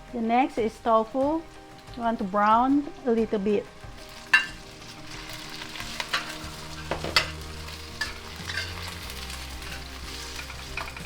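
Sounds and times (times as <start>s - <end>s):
bean curd sizzling in oil: 0.0s - 11.0s.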